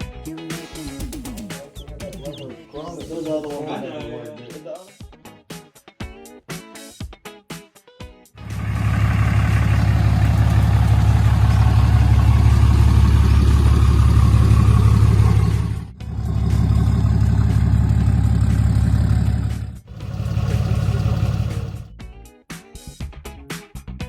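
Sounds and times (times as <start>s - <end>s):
vehicle engine rumbling: 8.4s - 22.0s.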